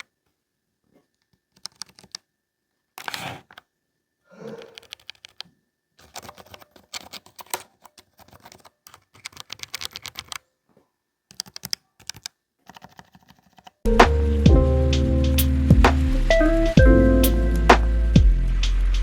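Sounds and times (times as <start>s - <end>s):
mechanical keyboard clicking: 1.5s - 2.2s, 4.6s - 5.4s, 6.0s - 10.4s, 11.3s - 13.8s
music: 13.9s - 19.0s.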